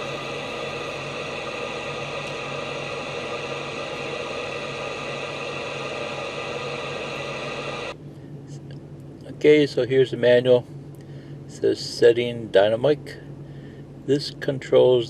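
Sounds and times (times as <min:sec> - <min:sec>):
radio static hiss and hum: 0:00.0 - 0:08.7.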